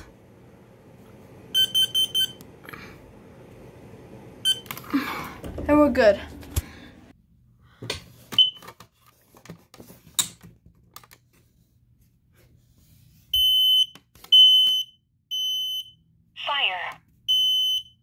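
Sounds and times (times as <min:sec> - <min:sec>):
alarm beeping: 0:01.5 - 0:02.4, 0:17.3 - 0:18.0.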